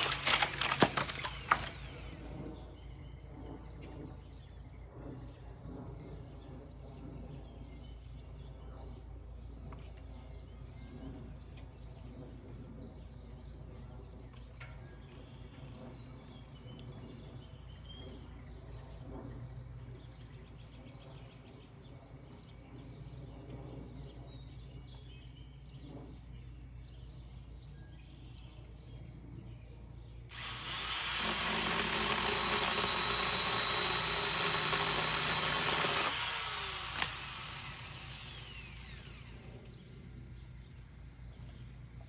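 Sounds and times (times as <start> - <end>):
electric saw whining: 0.0 - 2.3, 30.3 - 39.5.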